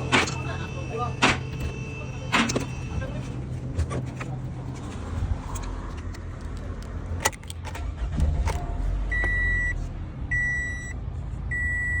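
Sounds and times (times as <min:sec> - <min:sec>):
car warning chime beeping: 0:09.1 - 0:12.0.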